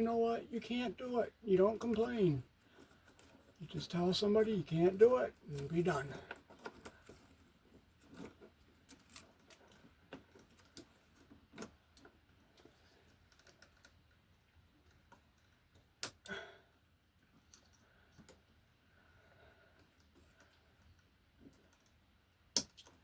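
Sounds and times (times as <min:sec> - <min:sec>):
pliers and wire clicking: 0:08.0 - 0:14.1, 0:14.8 - 0:16.4, 0:19.8 - 0:23.0.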